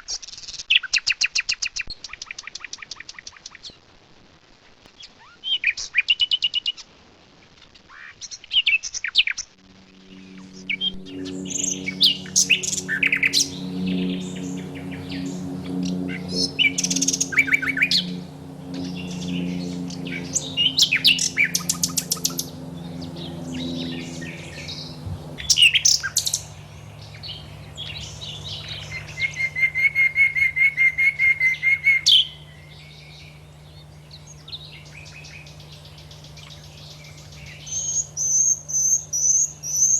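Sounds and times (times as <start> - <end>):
steady low hum: 9.6 - 39.9
songbirds chirping and trilling: 9.8 - 39.9.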